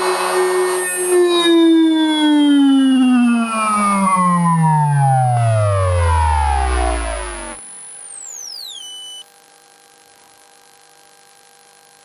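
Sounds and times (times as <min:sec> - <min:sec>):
high electrical whine gliding down: 0:00.0 - 0:09.4
electric inverter tones falling: 0:01.4 - 0:09.3.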